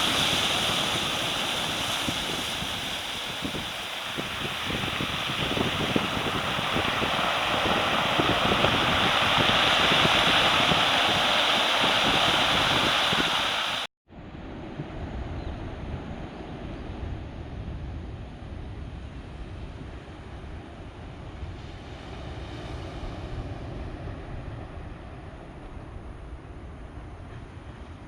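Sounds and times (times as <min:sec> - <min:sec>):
heavy surf breaking waves: 0:00.0 - 0:13.9
wind buffeting microphone: 0:00.0 - 0:28.0.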